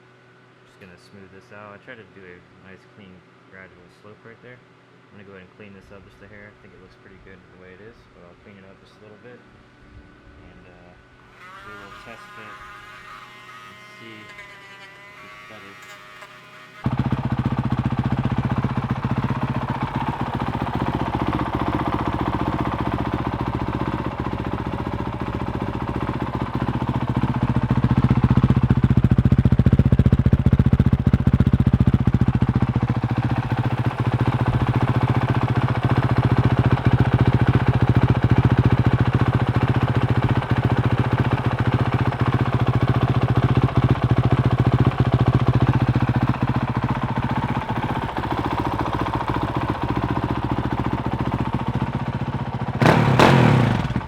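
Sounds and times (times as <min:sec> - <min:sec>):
motorcycle engine idling: 0:16.8 - 0:54.0.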